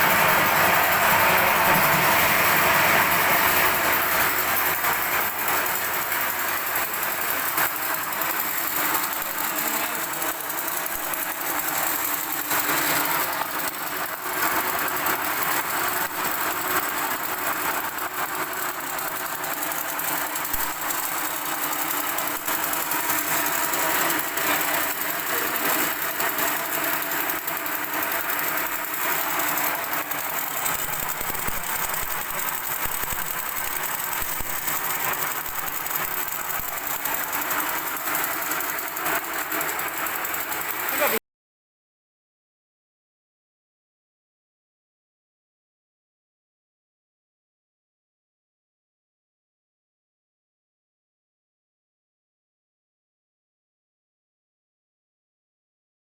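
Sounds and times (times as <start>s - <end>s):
extruder machine running: 0.0s - 41.2s.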